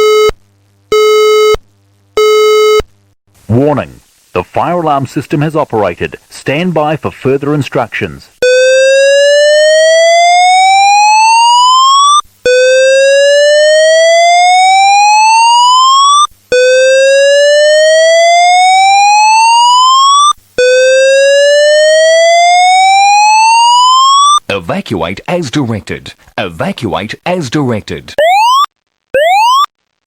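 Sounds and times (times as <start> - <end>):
whooping evacuation alarm tone: 8.4 - 24.4, 28.2 - 29.7.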